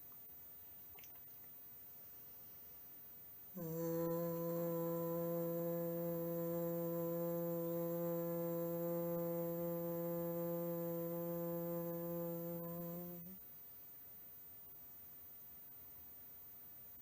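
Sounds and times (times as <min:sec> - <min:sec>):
woman humming low pitch: 0:03.6 - 0:13.4.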